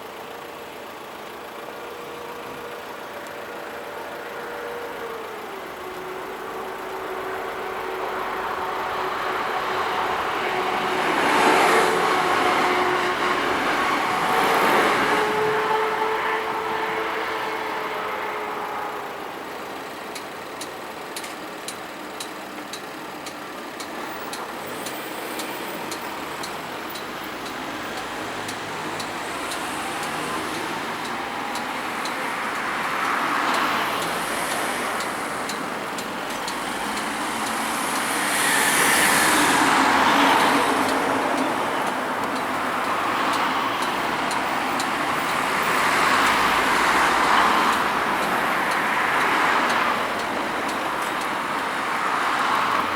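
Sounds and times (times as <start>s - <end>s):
cars driving past: 0.0s - 52.9s.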